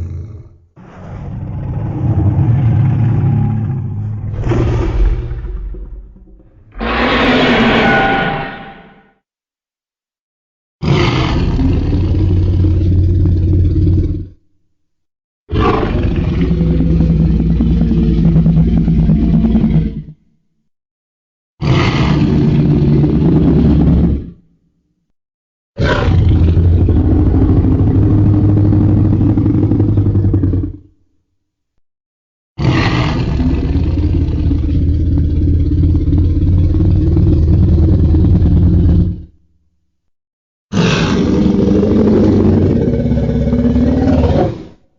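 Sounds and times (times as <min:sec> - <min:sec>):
low monster roar: 0:00.0 - 0:09.0, 0:10.8 - 0:14.4, 0:15.5 - 0:20.1, 0:21.6 - 0:24.4, 0:25.8 - 0:30.9, 0:32.6 - 0:39.4, 0:40.7 - 0:44.8.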